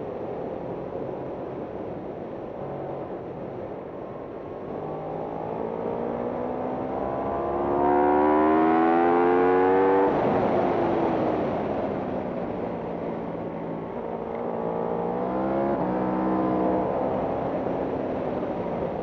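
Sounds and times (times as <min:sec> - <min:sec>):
motorcycle engine accelerating: 0:04.8 - 0:11.5, 0:14.4 - 0:18.4
wind rush on microphone: 0:09.7 - 0:14.4.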